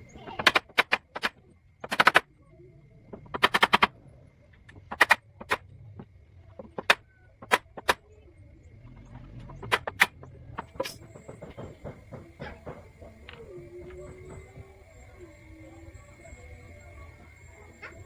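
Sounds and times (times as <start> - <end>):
hammer blows: 9.6 - 15.0.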